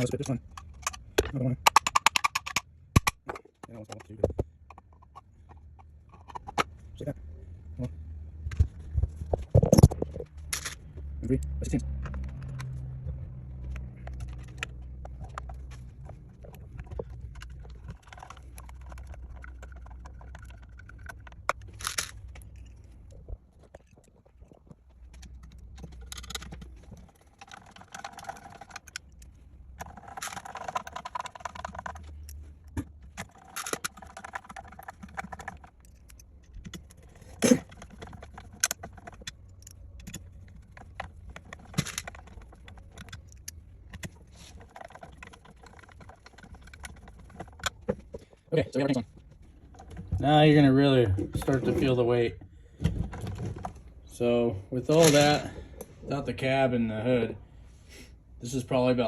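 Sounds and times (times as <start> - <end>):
metal parts clinking and scraping: 8.5 - 10.9, 13.6 - 48.2, 54.9 - 55.7.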